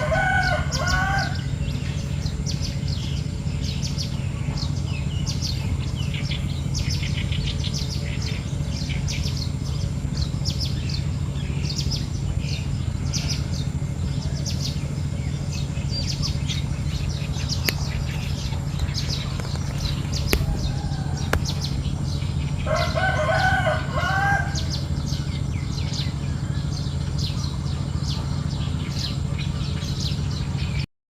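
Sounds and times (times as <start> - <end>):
rooster crowing: 0.0 - 1.7, 19.8 - 25.0
small birds chirping: 0.0 - 30.9.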